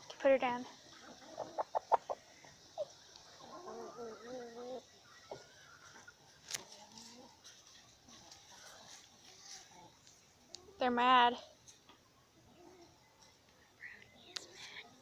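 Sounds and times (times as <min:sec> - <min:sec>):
hens clucking: 0:00.0 - 0:10.8
hen wavering growl-like call: 0:03.4 - 0:04.9.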